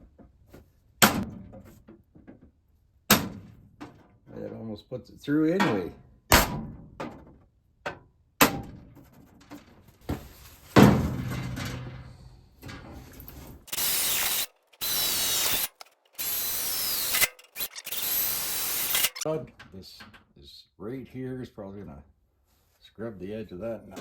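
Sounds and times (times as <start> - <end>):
electric drill drilling into metal: 13.7 - 19.2.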